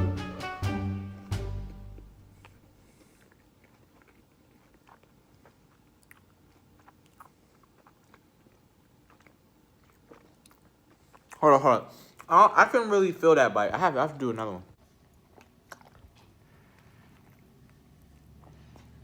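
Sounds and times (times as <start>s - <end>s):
music chord: 0.0s - 2.3s
faint crunchy chewing: 1.6s - 12.4s, 14.8s - 19.0s.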